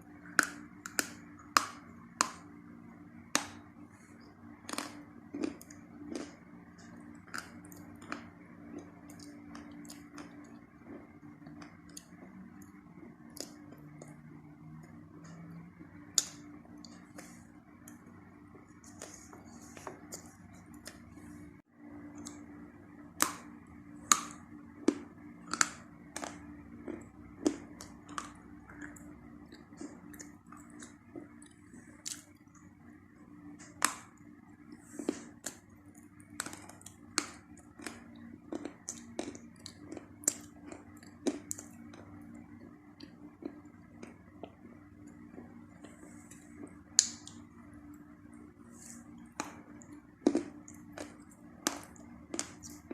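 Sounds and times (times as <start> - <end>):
steady low hum: 0.0 - 52.9
chalk crunching while chewed: 3.3 - 14.2, 23.2 - 32.7, 33.6 - 47.4, 48.7 - 52.9.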